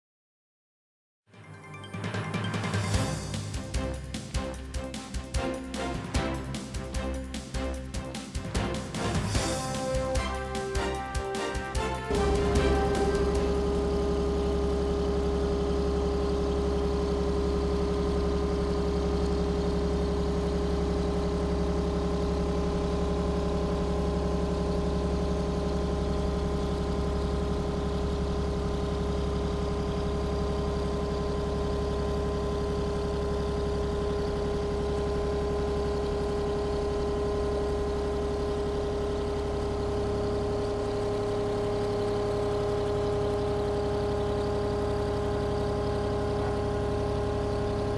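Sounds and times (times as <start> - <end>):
hydraulic pump hum and whine: 13.2 - 47.9.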